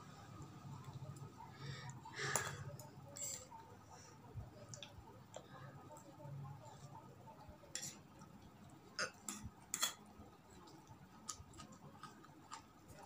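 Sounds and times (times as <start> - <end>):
cutlery clinking against dish: 9.0 - 10.1.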